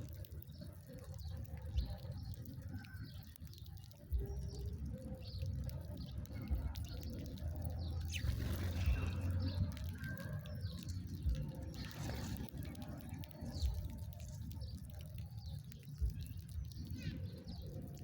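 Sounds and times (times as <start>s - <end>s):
small birds chirping: 0.0s - 18.0s
steady low rumble: 4.1s - 15.0s.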